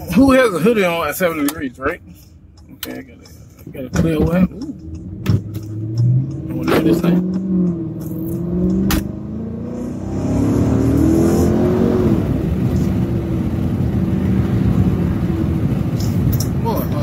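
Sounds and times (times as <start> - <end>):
car engine accelerating: 3.7 - 17.0.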